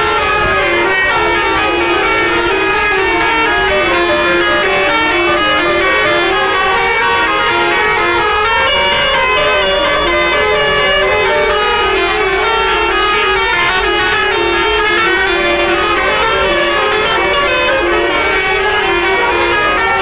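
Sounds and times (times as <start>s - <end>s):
bus horn playing a melody: 0.0s - 20.0s.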